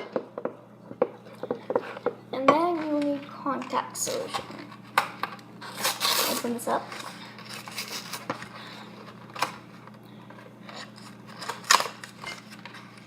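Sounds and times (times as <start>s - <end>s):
packaging clicks and rustles: 5.3s - 13.0s.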